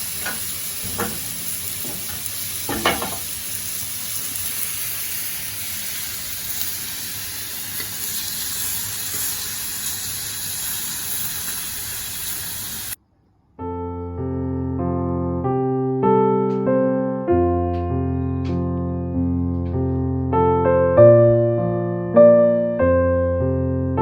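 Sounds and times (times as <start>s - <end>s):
food sizzling on stove: 0.0s - 13.0s.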